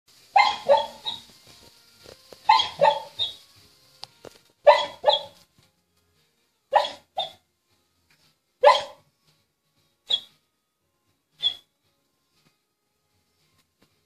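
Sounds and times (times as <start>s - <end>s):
puppy barking in its sleep: 0.3s - 1.3s, 2.4s - 3.4s, 4.6s - 5.4s, 6.7s - 7.4s, 8.6s - 9.0s, 10.1s - 10.3s, 11.4s - 11.7s.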